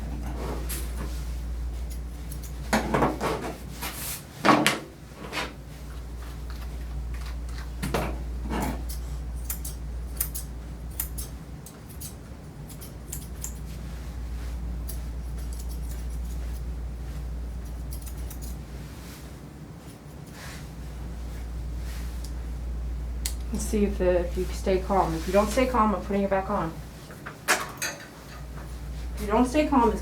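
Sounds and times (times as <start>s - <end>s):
metallic snipping and clinking: 8.7s - 13.7s, 17.6s - 18.6s
low hum: 19.8s - 27.0s.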